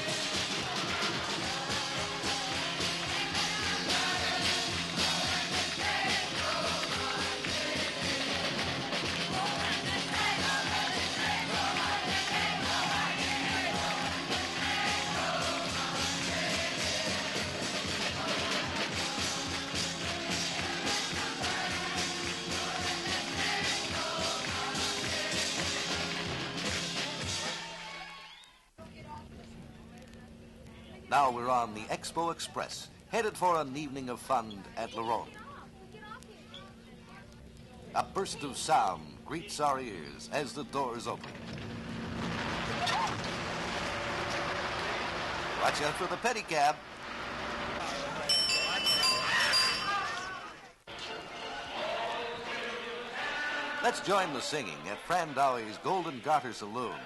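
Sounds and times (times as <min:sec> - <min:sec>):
group singing along: 0:00.0 - 0:26.3, 0:50.9 - 0:56.1
music with steady beat: 0:00.0 - 0:27.8.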